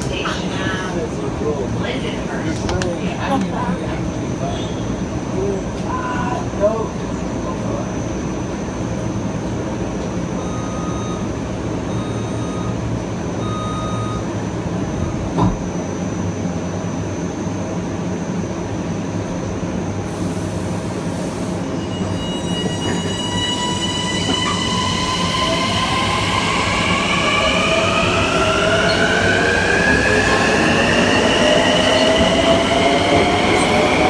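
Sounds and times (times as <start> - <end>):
train low rumble: 0.0 - 34.0
short beeps: 10.4 - 11.3, 11.9 - 12.8, 13.4 - 14.3
traction inverter whine rising: 23.3 - 34.0.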